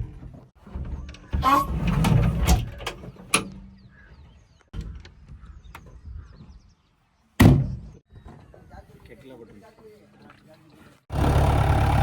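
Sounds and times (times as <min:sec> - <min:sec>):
diesel engine low rumble: 0:11.1 - 0:12.0.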